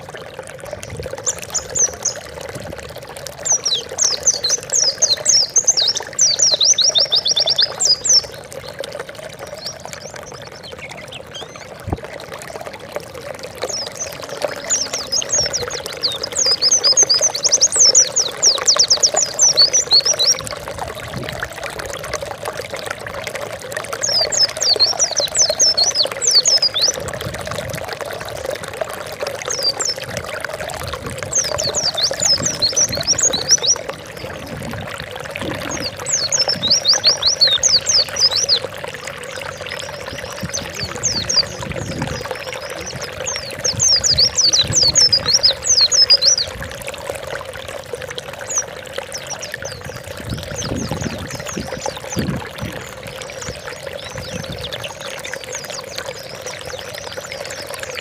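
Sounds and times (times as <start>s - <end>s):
running water: 0.0s - 58.0s
bird singing high chirps: 31.3s - 34.4s, 39.6s - 46.5s.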